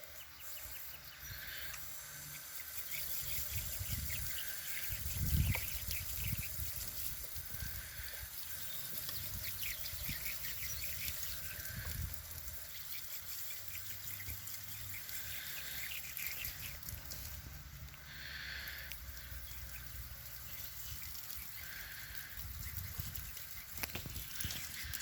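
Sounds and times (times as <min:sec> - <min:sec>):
hose hiss: 0:00.0 - 0:25.0
water trickling from hose: 0:00.0 - 0:25.0.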